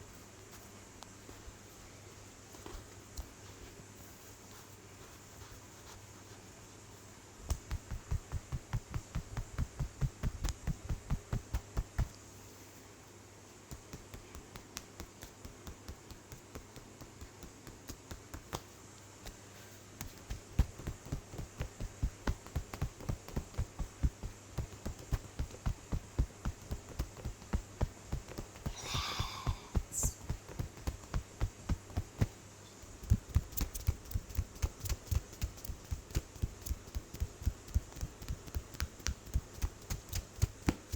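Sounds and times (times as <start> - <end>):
hands tapping head: 13.6 - 19.4, 20.0 - 40.9.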